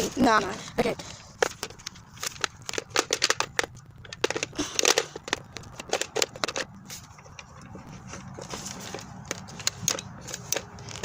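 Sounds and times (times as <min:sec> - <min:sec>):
plastic toy clicks and knocks: 0:00.8 - 0:07.7, 0:08.8 - 0:11.0.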